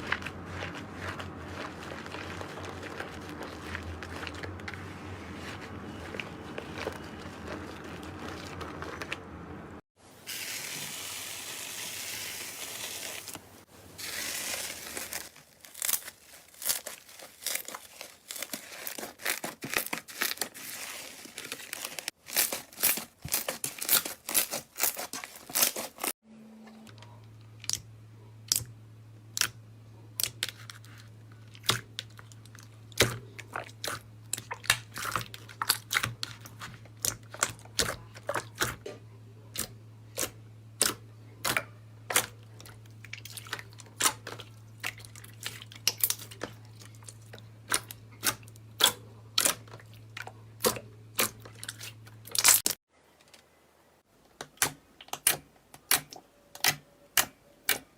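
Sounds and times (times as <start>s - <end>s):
low steady hum: 26.3s - 57.9s.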